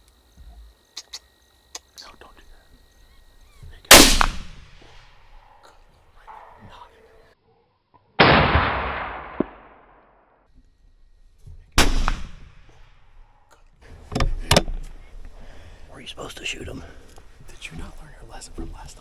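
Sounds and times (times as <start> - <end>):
rifle shots with echo: 3.9 - 4.8, 8.2 - 10.0, 11.8 - 12.6.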